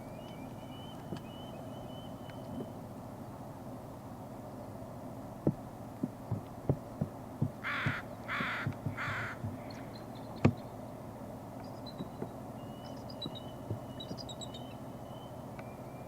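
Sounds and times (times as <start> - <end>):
crow cawing: 7.6 - 9.5.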